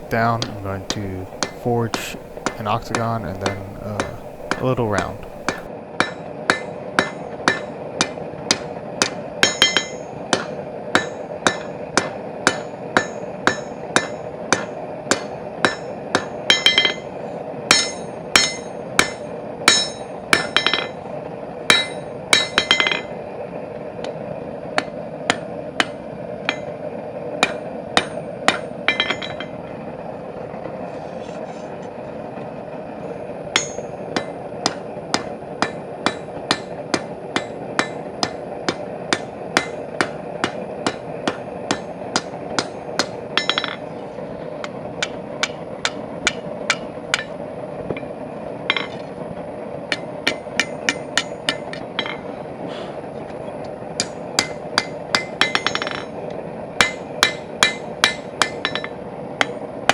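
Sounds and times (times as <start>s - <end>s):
hammer blows on steel over anvil: 0.0s - 5.7s.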